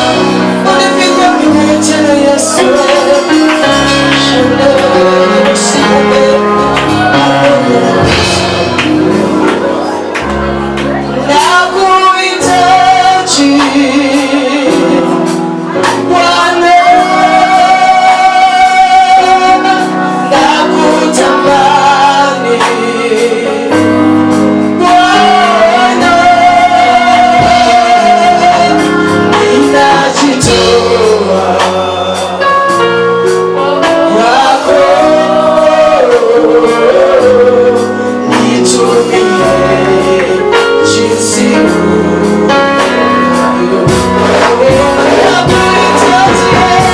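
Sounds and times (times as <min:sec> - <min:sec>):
keyboard and band chords: 0:00.0 - 0:46.9
woman singing gospel: 0:11.1 - 0:15.0, 0:15.8 - 0:23.4, 0:43.6 - 0:46.9.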